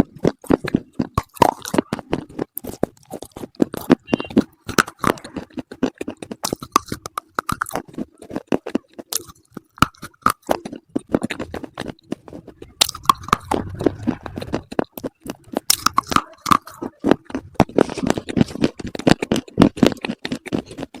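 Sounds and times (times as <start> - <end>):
crunching and chewing: 0.0 - 21.0.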